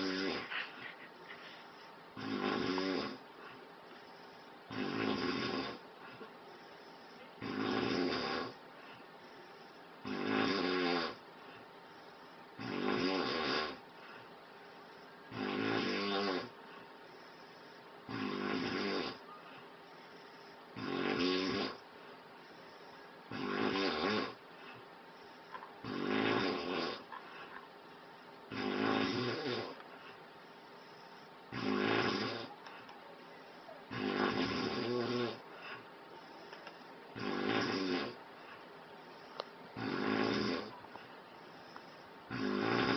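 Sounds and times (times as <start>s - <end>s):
man snoring: 0.0s - 0.6s, 2.1s - 3.3s, 4.0s - 5.8s, 6.6s - 8.6s, 9.3s - 11.2s, 12.0s - 13.9s, 15.0s - 19.2s, 20.1s - 21.8s, 22.5s - 24.4s, 25.2s - 27.2s, 28.5s - 29.8s, 30.8s - 32.6s, 33.6s - 36.5s, 37.1s - 38.2s, 39.2s - 40.8s, 41.5s - 42.9s
quiet breathing: 0.0s - 42.9s.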